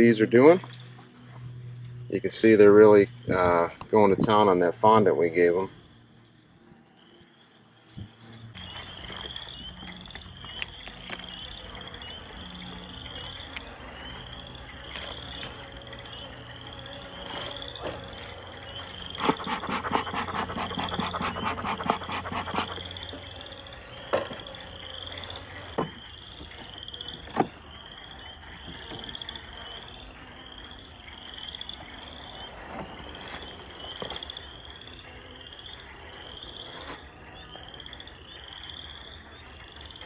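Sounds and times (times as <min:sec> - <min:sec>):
frog rapid rattling call: 0:08.6 - 0:32.5
frogs chirping: 0:08.6 - 0:40.0.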